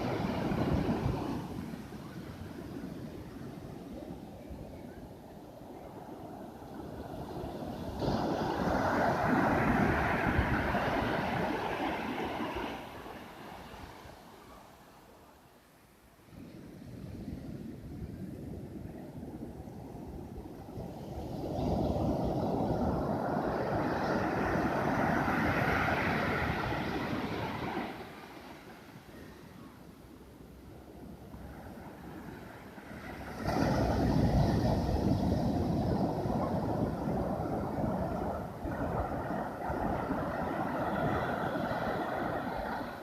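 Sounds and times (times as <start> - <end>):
sea wave breaking on shore: 7.0 - 14.2, 32.2 - 43.0.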